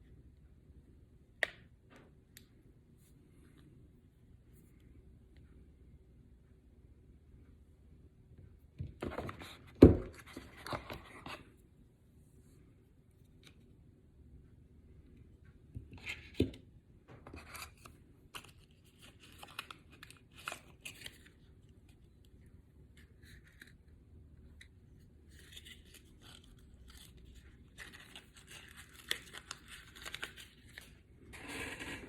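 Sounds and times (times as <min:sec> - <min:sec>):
packaging tearing and rustling: 0:25.4 - 0:32.0.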